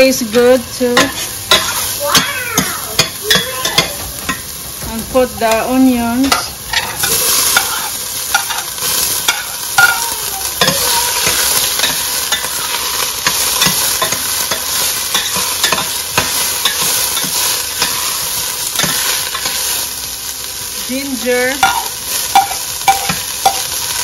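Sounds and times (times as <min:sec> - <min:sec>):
garlic and onions sizzling in oil: 0:00.0 - 0:24.0
utensil scraping pan: 0:05.1 - 0:19.8.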